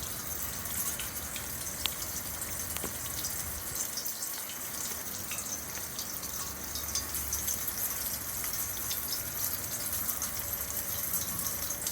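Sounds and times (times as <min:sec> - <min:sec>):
water splashing down rain chain: 0:00.0 - 0:11.9.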